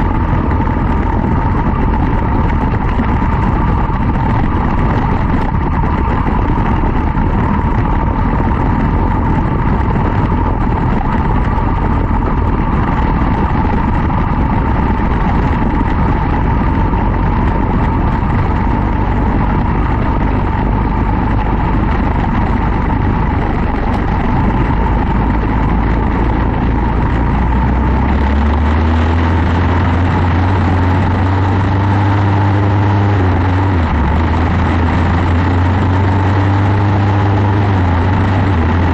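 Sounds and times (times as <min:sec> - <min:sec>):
deeper engine tone: 0:00.0 - 0:38.9
race car engine running hard: 0:00.0 - 0:38.9.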